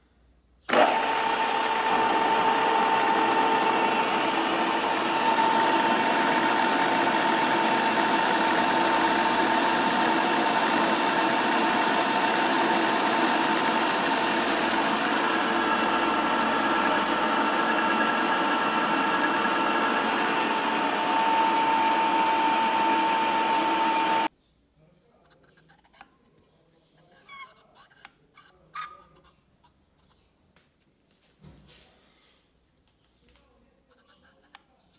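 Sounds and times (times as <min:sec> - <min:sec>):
machine tool whining: 0:00.7 - 0:24.3.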